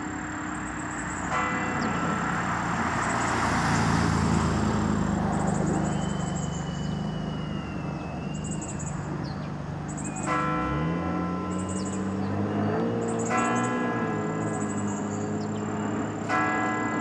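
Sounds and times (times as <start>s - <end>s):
church bell striking: 0.0s - 3.2s, 10.1s - 17.0s
car passing: 0.0s - 17.0s.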